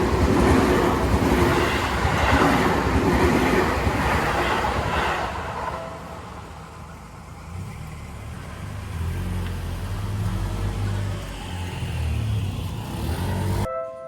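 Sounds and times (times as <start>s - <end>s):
vehicle passing close by: 7.3s - 13.7s.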